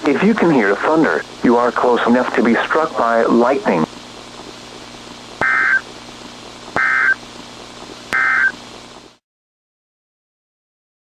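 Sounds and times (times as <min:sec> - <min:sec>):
two-tone digital warble bursts: 0:05.4 - 0:05.8, 0:06.8 - 0:07.2, 0:08.2 - 0:08.6.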